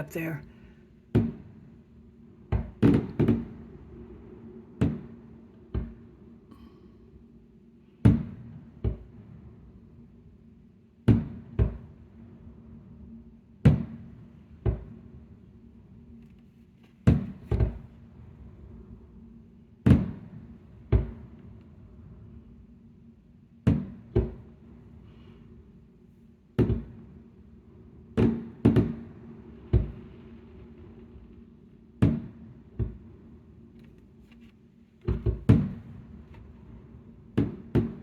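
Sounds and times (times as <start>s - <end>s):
low background hum: 0.0s - 38.0s
fireworks booming: 2.6s - 4.2s, 28.2s - 33.4s, 35.0s - 38.0s.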